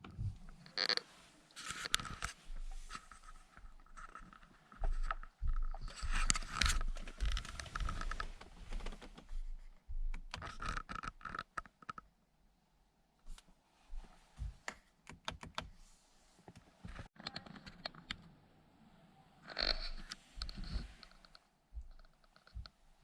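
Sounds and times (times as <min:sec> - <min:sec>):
small hard parts scraping and clicking: 0:00.6 - 0:08.4.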